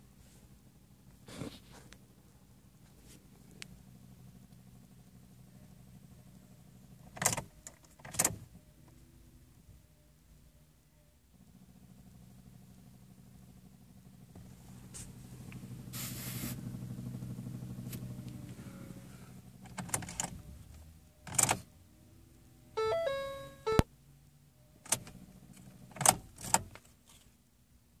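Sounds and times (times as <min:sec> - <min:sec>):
short chime-like tone: 0:22.8 - 0:23.8.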